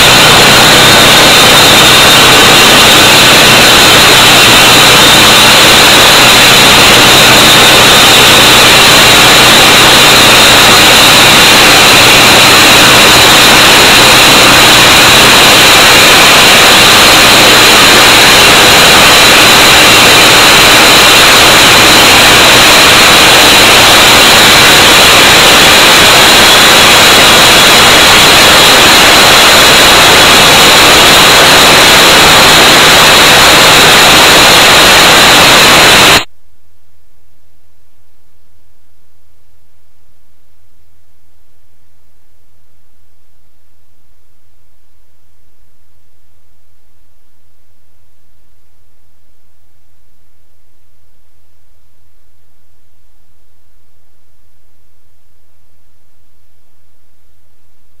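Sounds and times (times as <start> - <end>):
concrete saw running: 0.0 - 36.3.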